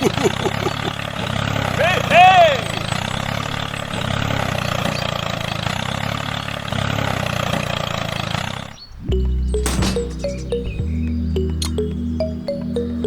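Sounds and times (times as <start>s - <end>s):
engine running with low pulse: 0.0s - 12.4s
music: 9.0s - 13.0s.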